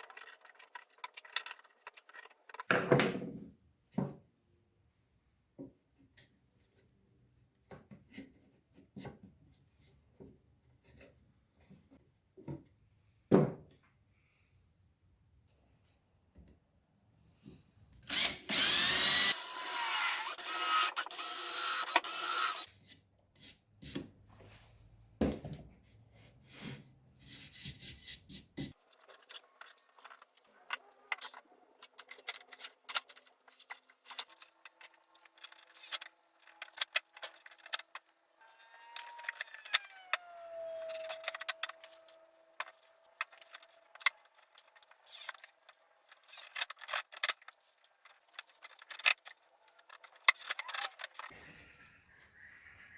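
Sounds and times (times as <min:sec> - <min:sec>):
small parts clicking and knocking: 0:00.0 - 0:03.0, 0:18.0 - 0:22.7, 0:28.7 - 0:51.4
power drill running: 0:18.1 - 0:22.7.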